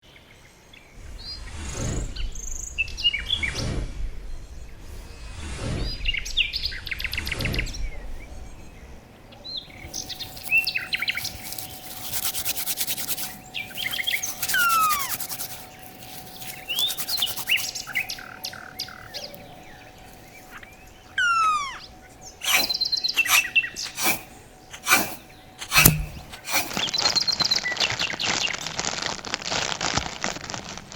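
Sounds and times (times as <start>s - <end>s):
birds chirping and whistling: 9.5s - 28.6s
knife scraping bamboo: 9.8s - 18.4s, 22.4s - 27.3s.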